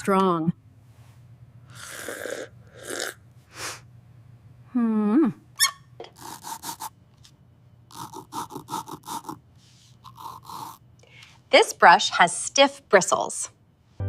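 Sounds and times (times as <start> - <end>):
soft hissy breaths: 9.6 - 10.1.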